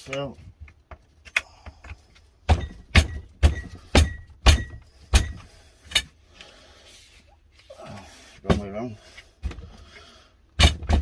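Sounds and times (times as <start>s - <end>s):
shelving frame parts knocking: 2.4s - 5.5s, 10.6s - 11.0s.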